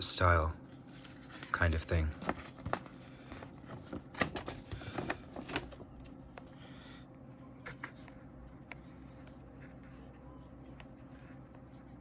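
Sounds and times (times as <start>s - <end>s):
paper rustling: 0.9s - 6.1s.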